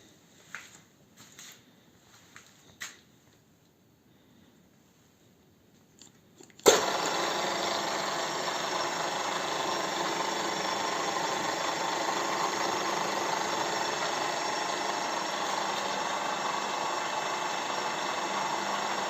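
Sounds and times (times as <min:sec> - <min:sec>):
drill press motor running: 0:06.5 - 0:19.0.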